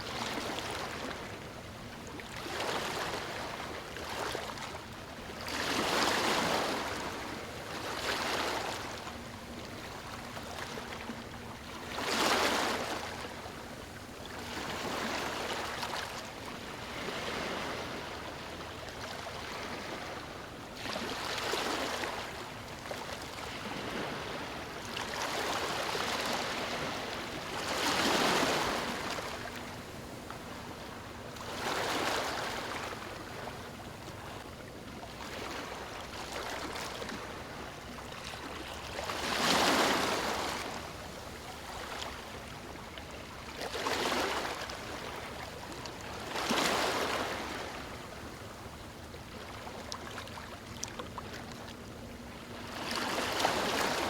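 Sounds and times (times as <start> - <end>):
waves breaking on stony shore: 23.4 - 29.7, 31.4 - 33.1, 39.0 - 40.9, 43.7 - 45.1.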